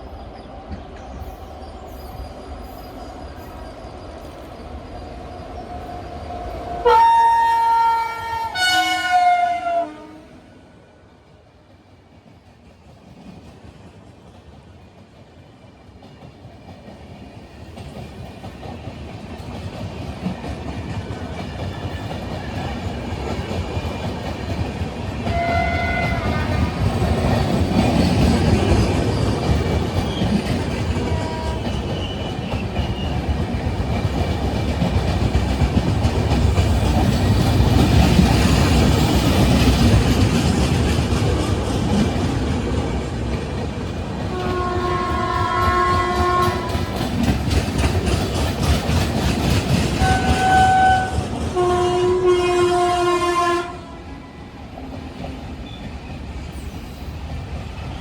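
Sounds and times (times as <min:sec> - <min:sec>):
train horn blasts: 0:06.8 - 0:10.8, 0:25.3 - 0:26.9, 0:31.0 - 0:32.0, 0:44.3 - 0:47.1, 0:50.0 - 0:54.2
train wheels clattering: 0:11.7 - 0:52.6.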